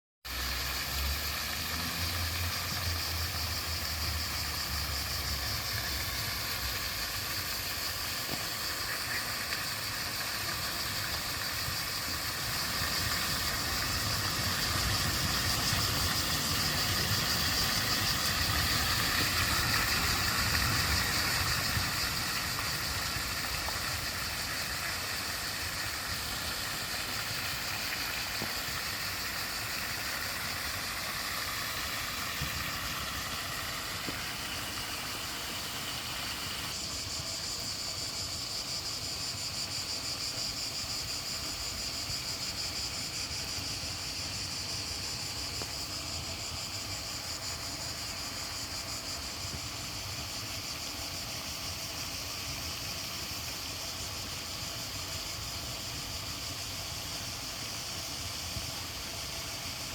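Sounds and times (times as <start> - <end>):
flowing water rushing: 0.3 - 36.9.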